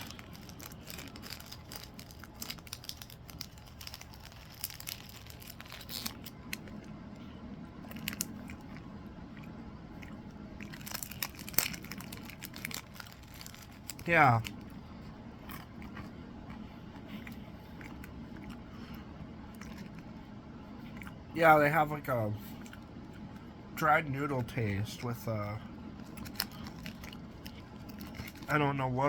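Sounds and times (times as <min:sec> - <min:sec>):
plastic snack packet crinkling: 0:00.0 - 0:06.9, 0:07.8 - 0:08.8, 0:10.1 - 0:14.8, 0:26.0 - 0:29.0
crunching of snack being chewed: 0:00.0 - 0:21.2, 0:22.5 - 0:23.5, 0:26.0 - 0:29.0.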